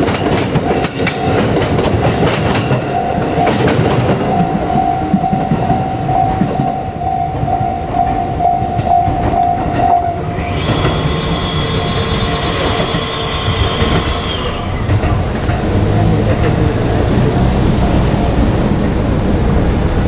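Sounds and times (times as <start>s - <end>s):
crossing warning bell dinging: 0.0s - 20.0s
train wheels rumbling and clattering: 0.0s - 20.0s
long steady multi-pitch tone: 4.3s - 15.0s.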